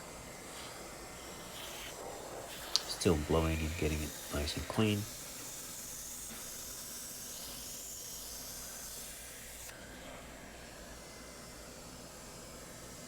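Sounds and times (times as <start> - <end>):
blower air hissing: 0.0 - 9.7.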